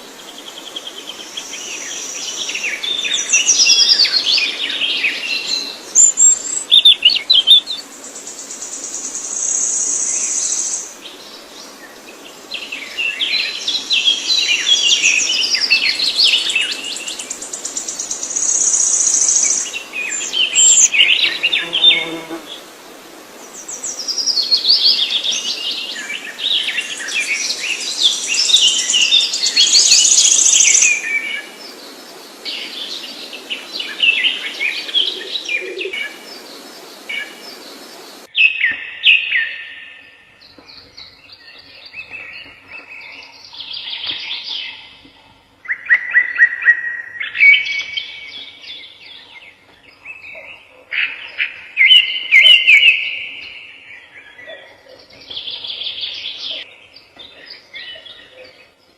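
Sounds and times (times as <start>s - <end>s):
steady hiss: 0.0s - 38.3s
songbirds chirping: 0.0s - 58.9s.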